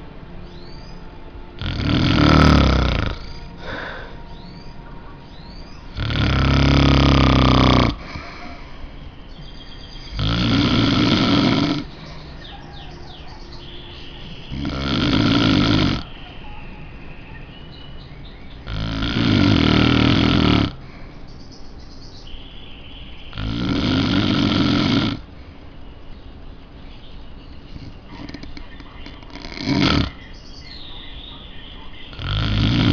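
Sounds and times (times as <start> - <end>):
man snoring: 1.6 - 4.1, 5.9 - 8.2, 10.1 - 12.0, 14.5 - 16.0, 18.6 - 20.8, 23.4 - 25.2, 29.3 - 30.2, 32.2 - 32.9.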